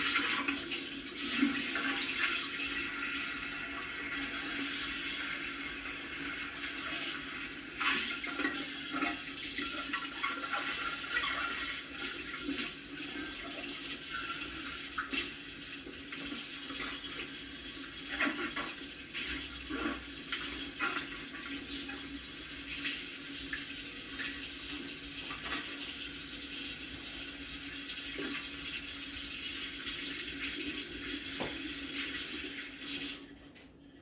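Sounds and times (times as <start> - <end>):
tap running into sink: 30.6 - 32.2.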